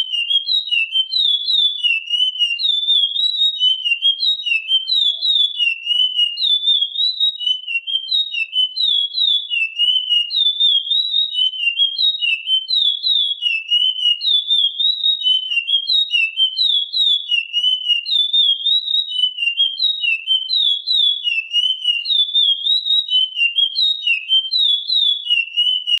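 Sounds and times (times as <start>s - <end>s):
finch singing whistled notes: 0.0s - 10.8s.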